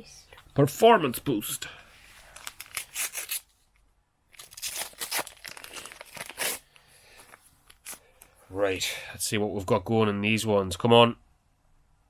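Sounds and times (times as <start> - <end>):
foil packets tearing and crinkling: 2.3 - 3.5, 4.3 - 6.8.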